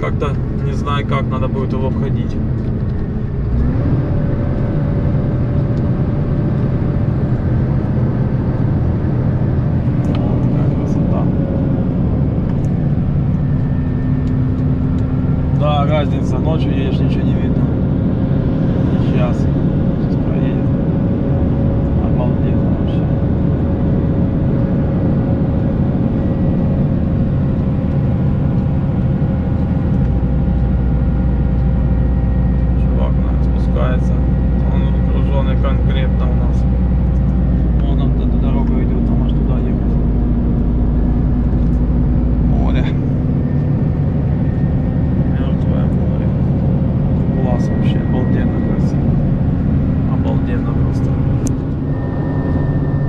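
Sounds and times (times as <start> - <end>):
road noise inside cab: 0.0 - 53.0
truck engine rumble: 0.0 - 53.0
faint steady whine: 23.8 - 53.0.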